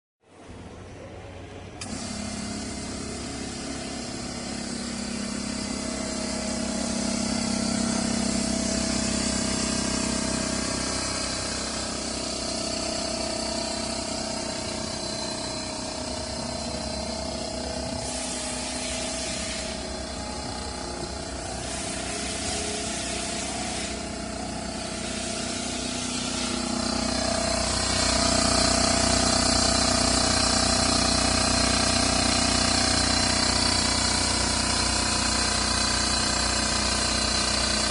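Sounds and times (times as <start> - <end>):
air compressor running: 0.3 - 37.9
air hiss bursts: 1.8 - 34.0.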